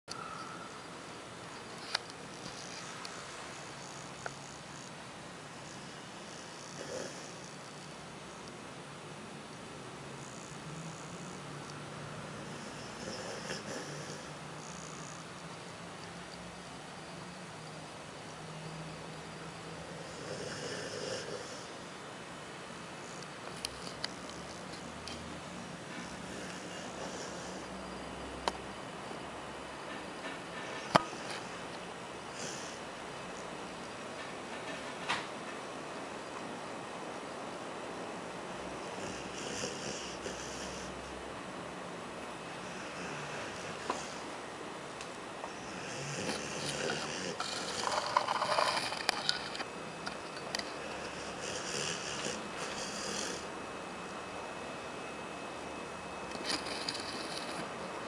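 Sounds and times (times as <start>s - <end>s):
pet snoring and snuffling: 2.3s - 4.9s, 5.5s - 8.4s, 10.1s - 15.5s, 19.3s - 21.9s, 23.0s - 28.4s, 30.6s - 33.5s, 38.8s - 41.2s, 42.6s - 44.4s, 45.5s - 53.6s, 56.3s - 57.8s.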